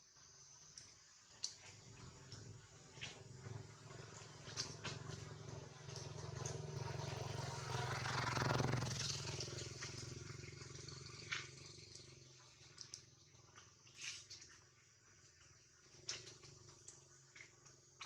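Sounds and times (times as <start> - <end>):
vehicle engine passing by: 1.8 - 13.0.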